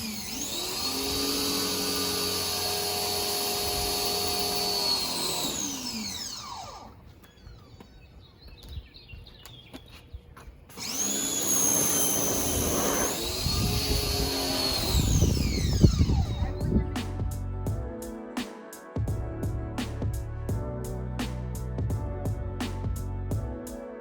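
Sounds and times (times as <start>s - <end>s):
pressure washer motor whine: 0.0s - 8.0s, 10.7s - 16.6s.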